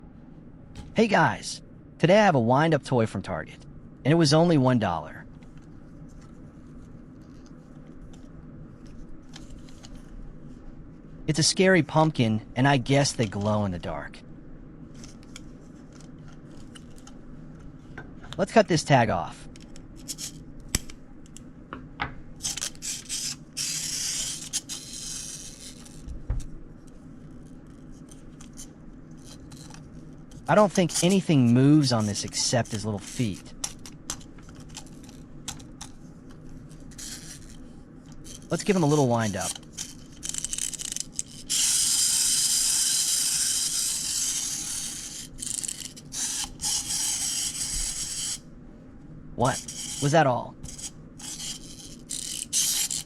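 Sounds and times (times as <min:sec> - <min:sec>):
scratchy noise: 0:22.4 - 0:26.0, 0:30.5 - 0:33.5, 0:38.3 - 0:39.6, 0:40.6 - 0:48.4, 0:49.4 - 0:53.0
clockwork motor whirring: 0:38.3 - 0:48.4, 0:49.4 - 0:53.0.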